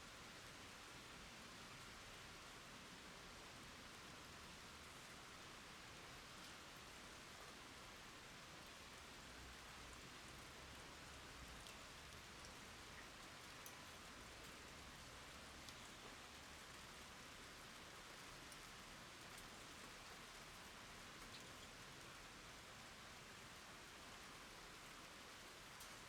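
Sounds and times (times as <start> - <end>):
raindrop ticks: 11.6 - 14.6, 15.6 - 16.3, 21.2 - 21.7.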